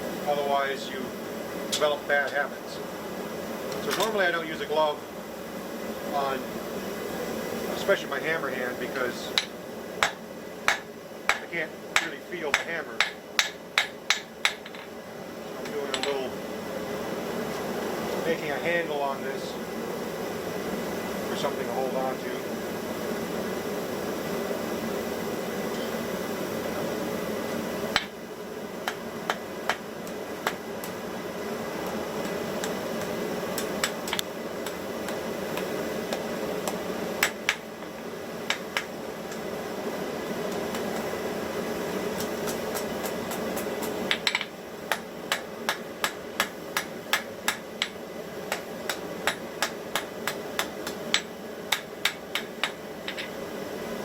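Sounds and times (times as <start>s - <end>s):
hammer striking steel on anvil: 9.4s - 14.9s.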